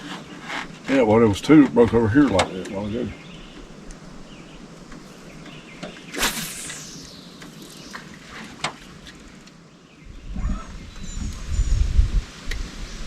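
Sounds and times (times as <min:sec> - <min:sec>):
fishing line cast swish: 0:06.1 - 0:08.0.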